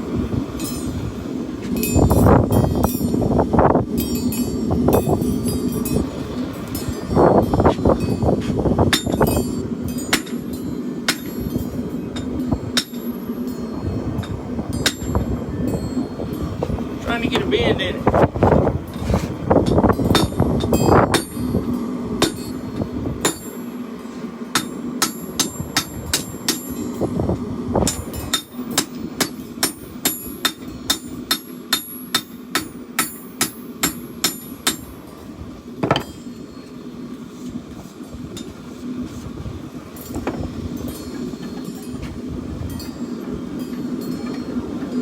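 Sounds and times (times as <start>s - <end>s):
steady low hum: 0.0s - 45.0s
hammer striking steel on anvil: 8.0s - 15.2s, 19.6s - 21.6s, 22.2s - 22.6s, 23.2s - 23.6s, 24.5s - 26.9s, 27.8s - 34.9s.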